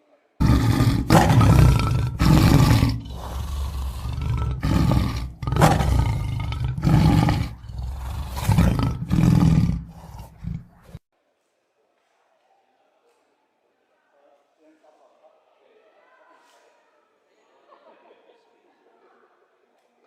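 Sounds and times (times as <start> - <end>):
tiger roaring: 0.4 - 11.0.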